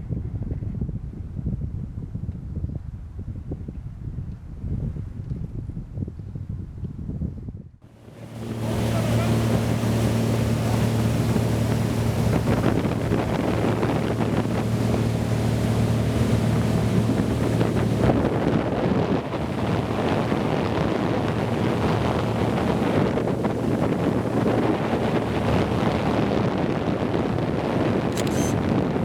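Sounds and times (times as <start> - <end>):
wind buffeting microphone: 0.0 - 29.0
low engine hum: 7.8 - 29.0.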